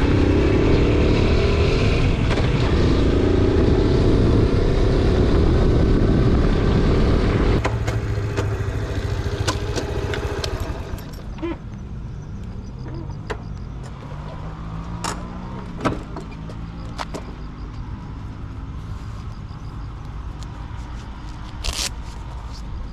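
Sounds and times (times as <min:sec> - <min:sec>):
wind noise: 0:00.0 - 0:07.6
motorcycle engine running: 0:00.0 - 0:11.6.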